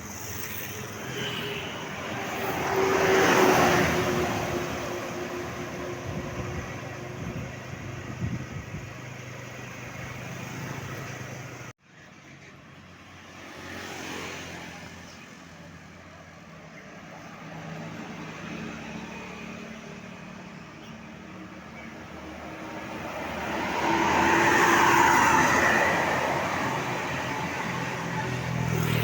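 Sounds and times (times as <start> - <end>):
road traffic passing: 0.0 - 29.0
vehicle passing: 0.2 - 11.7, 22.0 - 29.0.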